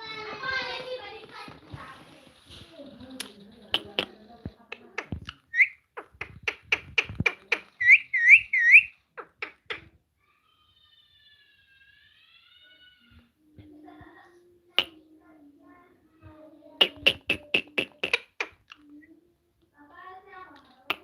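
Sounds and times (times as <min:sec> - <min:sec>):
parrot chirping: 0:03.3 - 0:09.9, 0:16.8 - 0:18.8
sharp clicks: 0:04.7 - 0:09.9
faint wavering whistles: 0:07.8 - 0:08.9.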